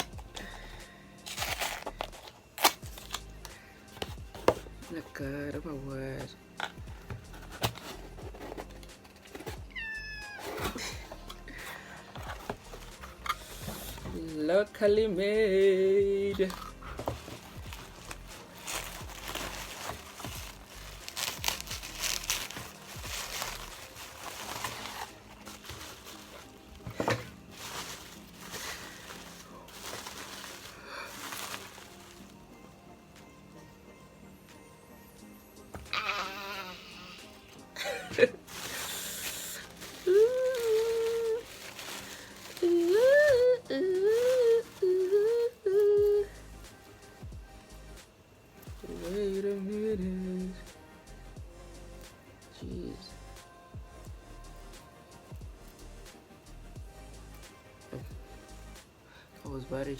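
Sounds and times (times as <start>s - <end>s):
packaging crinkling: 1.3s - 3.2s, 6.6s - 14.1s, 16.4s - 32.4s, 37.8s - 45.9s
woman humming: 35.9s - 37.4s, 38.8s - 41.8s, 42.5s - 46.4s, 48.8s - 50.7s.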